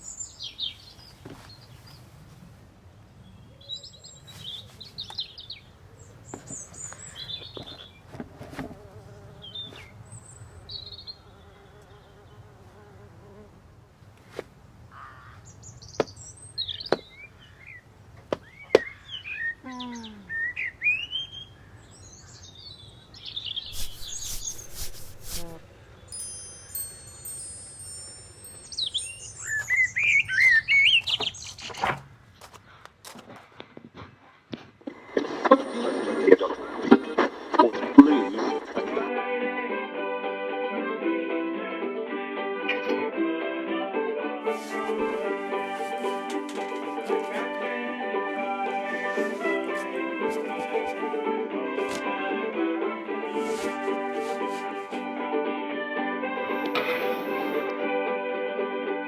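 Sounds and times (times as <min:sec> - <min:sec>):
songbirds chirping and singing: 0:03.4 - 0:08.0, 0:15.3 - 0:25.1, 0:26.1 - 0:31.7, 0:56.4 - 0:57.7.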